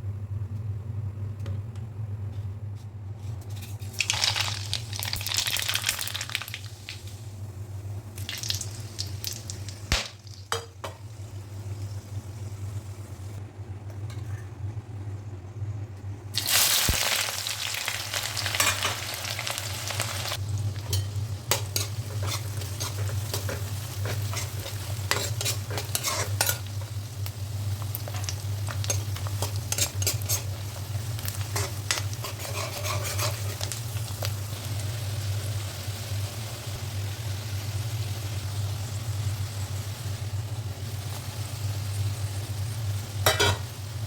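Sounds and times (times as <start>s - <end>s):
steady low hum: 0.0s - 4.1s, 6.6s - 17.1s, 18.0s - 44.0s
vegetable sizzling in a pan: 3.6s - 13.4s, 16.3s - 44.0s
spatula scraping a pan: 20.9s - 26.7s, 28.9s - 30.6s, 31.4s - 33.8s.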